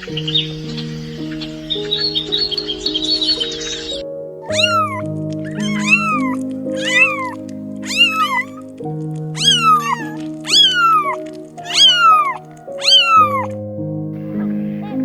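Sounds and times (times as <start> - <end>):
background music low notes: 0.0 - 15.0
cat meowing: 2.0 - 8.7, 9.4 - 13.5.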